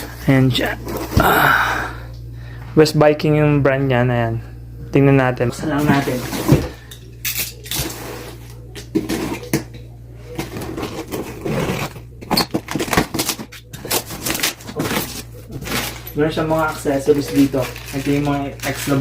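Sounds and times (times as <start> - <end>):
packaging rustling: 10.3 - 19.0.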